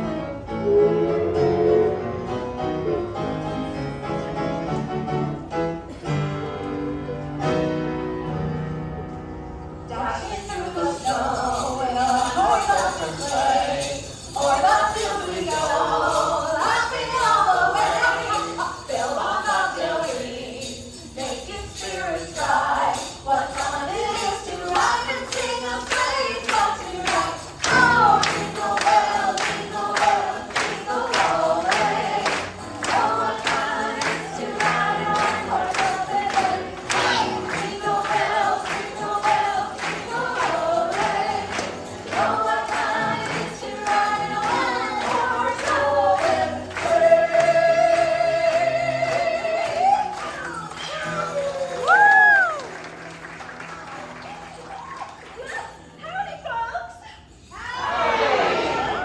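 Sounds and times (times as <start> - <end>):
band accompaniment: 0.0 - 9.4
group singing a festive song: 9.8 - 51.6, 57.7 - 59.0
group of voices singing: 9.9 - 50.8.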